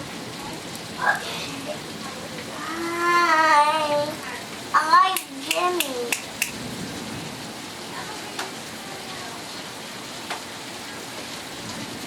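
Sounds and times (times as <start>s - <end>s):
steady rain falling: 0.0s - 12.0s
sharp taps: 5.2s - 6.6s.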